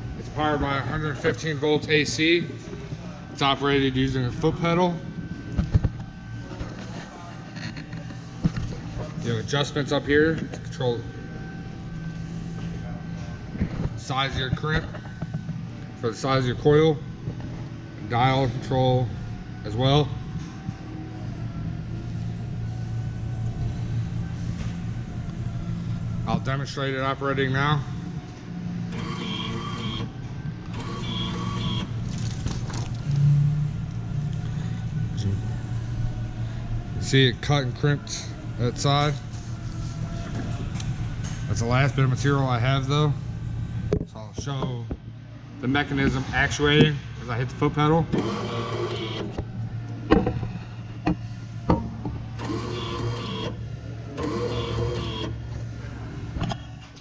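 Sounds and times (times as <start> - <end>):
low hum: 0.0 - 48.4, 49.0 - 52.7
motor-driven whirring strokes: 28.9 - 30.1, 30.7 - 33.5, 48.1 - 49.4, 52.3 - 53.6, 54.2 - 55.4
crimper motor bursts: 28.9 - 32.3, 54.2 - 55.4.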